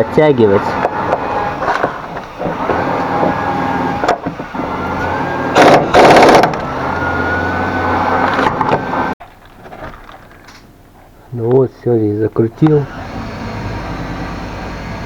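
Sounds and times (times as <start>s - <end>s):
impact wrench hammering: 5.6s - 6.7s.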